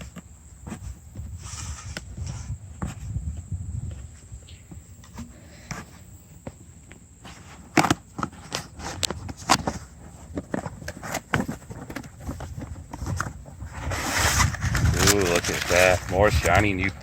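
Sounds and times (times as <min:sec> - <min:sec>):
parts and packaging handled: 0:04.9 - 0:16.7.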